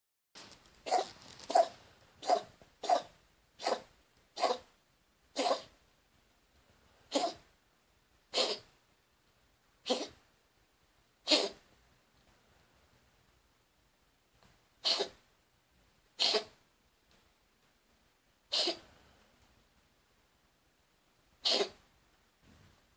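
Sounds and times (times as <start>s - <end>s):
cat coughing: 0.9s - 4.6s, 5.4s - 5.7s, 7.1s - 7.4s, 8.3s - 8.7s, 9.8s - 10.2s, 11.3s - 11.6s, 14.8s - 15.2s, 16.2s - 16.6s, 18.5s - 18.8s, 21.4s - 21.8s.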